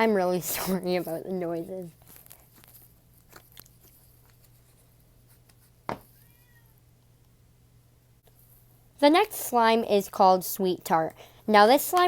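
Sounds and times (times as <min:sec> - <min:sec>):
low steady hum: 0:00.0 - 0:12.0
cat meowing faintly: 0:06.1 - 0:06.9.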